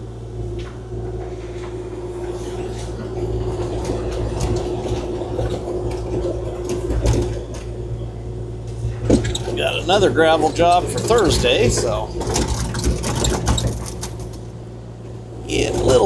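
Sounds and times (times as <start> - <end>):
excavator engine and hydraulics drone: 0.0 - 16.0.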